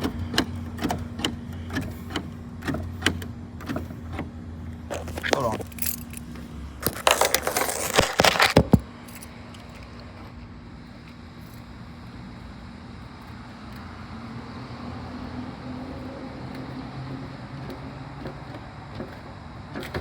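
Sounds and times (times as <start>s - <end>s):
truck door cracking and banging: 0.0s - 8.9s.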